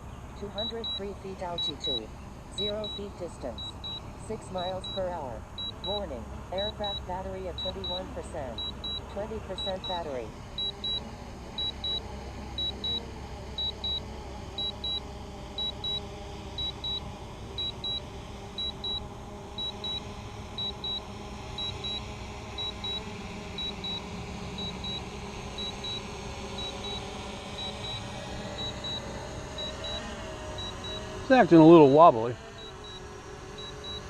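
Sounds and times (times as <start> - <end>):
drone propellers humming: 0.0 - 34.0
remote controller double beeps: 0.6 - 4.0, 4.6 - 6.0, 7.6 - 11.0, 11.6 - 12.0, 12.6 - 13.0, 13.6 - 14.0, 19.6 - 21.0, 21.6 - 22.0, 26.6 - 28.0, 28.6 - 31.1, 31.8 - 34.0.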